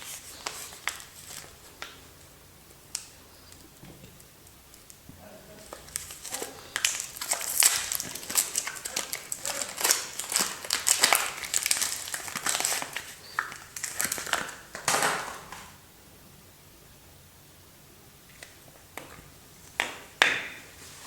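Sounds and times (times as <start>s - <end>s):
soap packaging crinkling: 0.0s - 2.3s, 5.6s - 15.6s.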